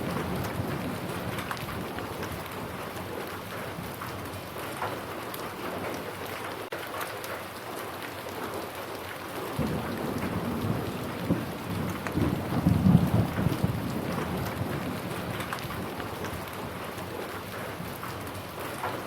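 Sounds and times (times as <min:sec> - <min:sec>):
low rumble of thunder: 0:00.0 - 0:04.9, 0:09.6 - 0:18.4
steady rain falling: 0:00.0 - 0:19.0.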